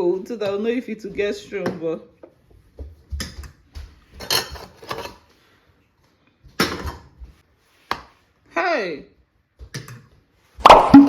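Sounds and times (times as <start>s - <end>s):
dishes and utensils clinking: 4.2s - 5.2s.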